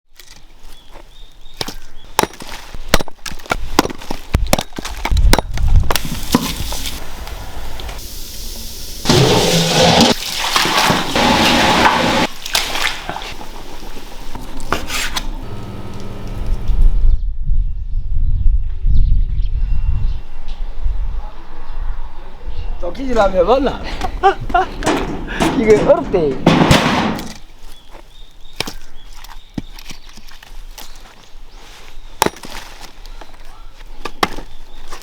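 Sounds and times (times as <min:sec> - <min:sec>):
water pouring: 0:09.0 - 0:14.8
pots and utensils clanking: 0:24.0 - 0:27.4.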